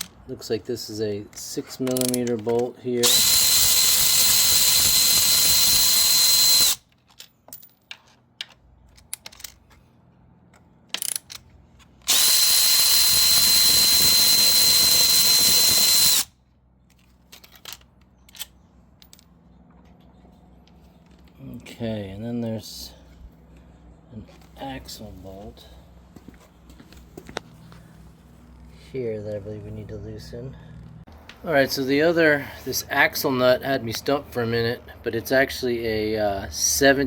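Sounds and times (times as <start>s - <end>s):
cordless power tool whine: 3.0s - 6.8s, 12.1s - 16.3s.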